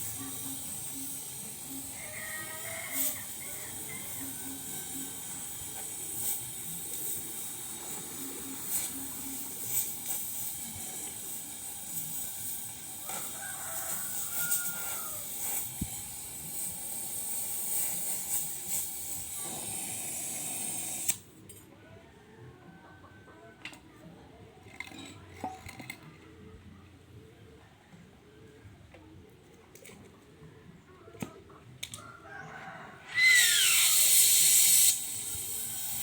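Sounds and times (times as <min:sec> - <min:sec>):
welding arc hissing and crackling: 0:00.0 - 0:21.3, 0:33.1 - 0:36.0.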